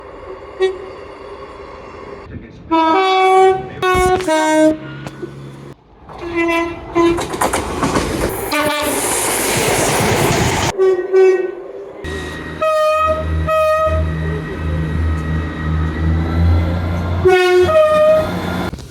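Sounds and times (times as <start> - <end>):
passing train rushing: 0.0 - 18.9
train horn blasts: 2.7 - 7.3, 8.5 - 9.0, 10.8 - 18.7.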